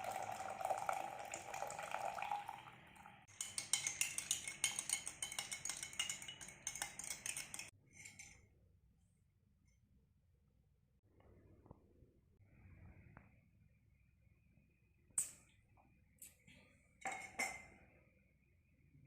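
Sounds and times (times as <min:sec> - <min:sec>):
spoon stirring and clinking glass: 0:00.0 - 0:02.6, 0:03.3 - 0:08.4, 0:17.0 - 0:17.7
water pouring into a glass: 0:00.0 - 0:03.2.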